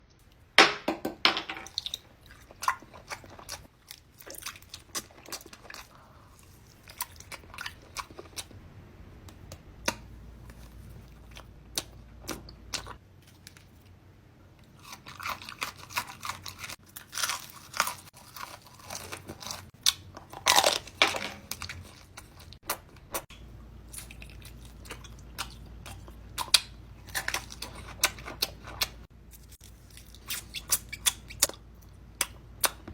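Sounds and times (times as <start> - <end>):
person chewing crunchy snacks: 14.7 - 23.2, 23.8 - 32.8.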